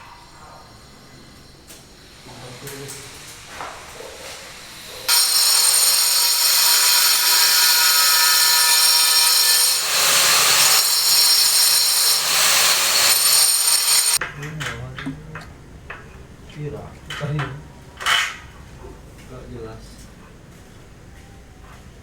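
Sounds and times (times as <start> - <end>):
power tool cutting with whine: 5.1 - 14.2.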